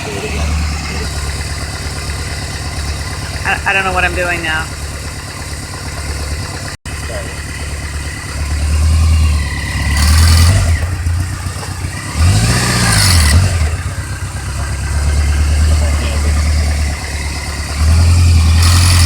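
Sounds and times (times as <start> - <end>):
engine rattle: 0.0 - 19.0
motorcycle engine revving: 0.0 - 19.0.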